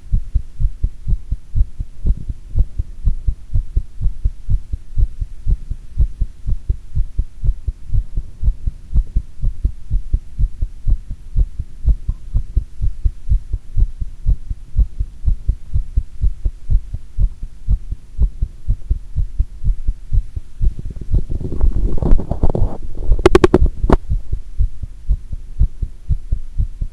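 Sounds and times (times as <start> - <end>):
heartbeat thumps: 0.0 - 26.9
rustling noise: 20.3 - 24.1.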